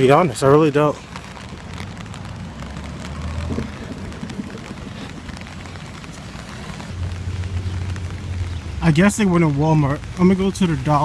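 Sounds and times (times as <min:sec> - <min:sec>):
rain falling: 0:00.0 - 0:11.0
low rumble: 0:01.1 - 0:09.3.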